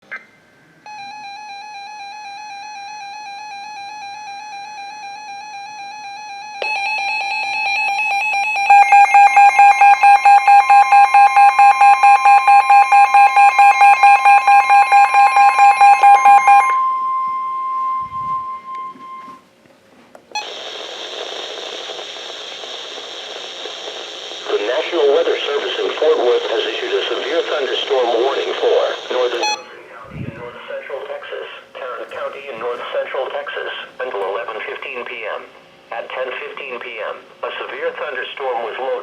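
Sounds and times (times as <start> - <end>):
steady high warning tone: 0.1 - 19.5, 20.3 - 31.7
wavering alert tone: 6.6 - 19.4
rapid alert beeping: 6.7 - 19.4, 26.6 - 29.7.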